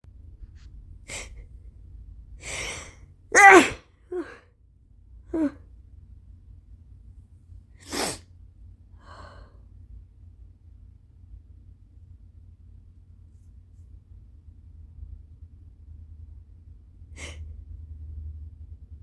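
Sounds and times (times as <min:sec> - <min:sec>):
short vocal sounds: 0:03.4 - 0:04.3
woman sneezing: 0:03.4 - 0:04.4, 0:07.9 - 0:08.2.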